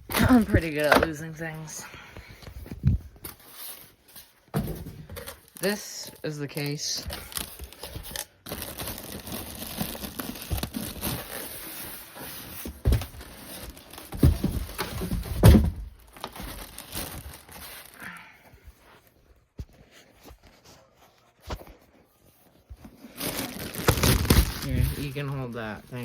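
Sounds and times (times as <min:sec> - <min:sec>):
plastic and cardboard crinkling: 0:00.1 - 0:26.0
heavy thumps: 0:14.1 - 0:16.0.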